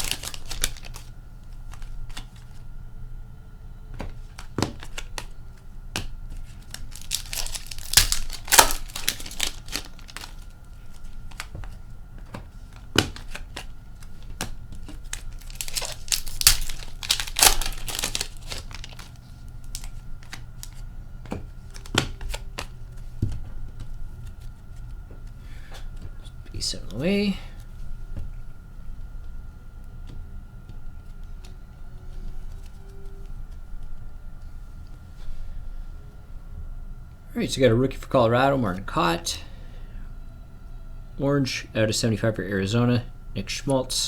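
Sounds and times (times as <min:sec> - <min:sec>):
wrappers tearing and crinkling: 0:00.0 - 0:01.1, 0:06.4 - 0:11.5, 0:14.8 - 0:20.8
cards clicking and rustling: 0:00.0 - 0:02.6, 0:04.0 - 0:26.0.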